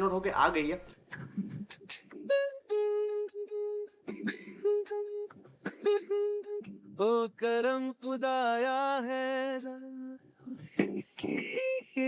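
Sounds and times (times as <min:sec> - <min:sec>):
long held sung notes: 0:02.0 - 0:08.6.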